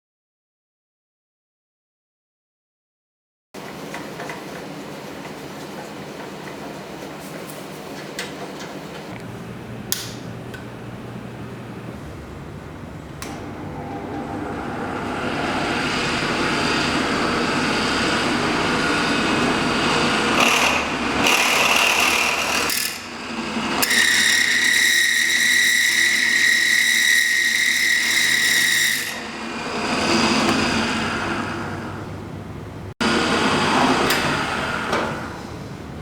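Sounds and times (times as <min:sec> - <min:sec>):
drill press whining: 0:12.2 - 0:32.4, 0:33.0 - 0:36.0.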